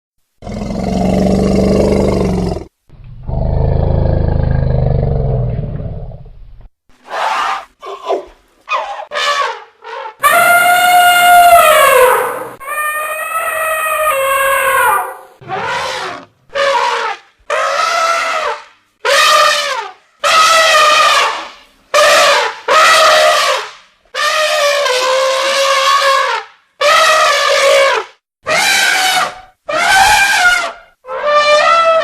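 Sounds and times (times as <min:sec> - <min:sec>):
elephant trumpeting: 0:07.0 - 0:32.0.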